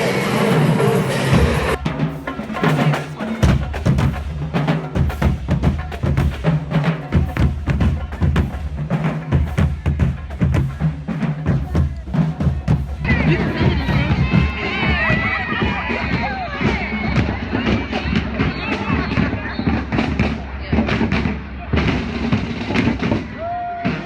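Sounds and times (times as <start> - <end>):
music with heavy bass and drums: 0.0 - 16.8
crowd noise: 0.0 - 24.0.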